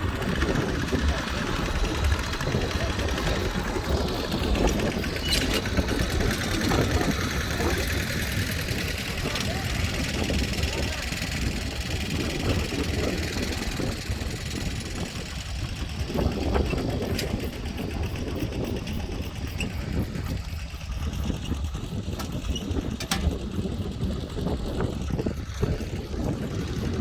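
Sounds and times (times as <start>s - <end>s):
tractor engine running: 0.0s - 27.0s.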